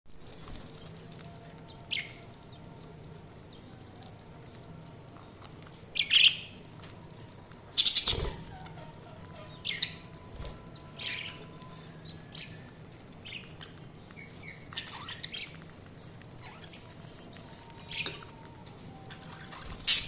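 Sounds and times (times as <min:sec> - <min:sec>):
budgerigars chirping: 0:06.0 - 0:06.6, 0:07.8 - 0:10.1, 0:13.2 - 0:15.7, 0:19.2 - 0:20.0.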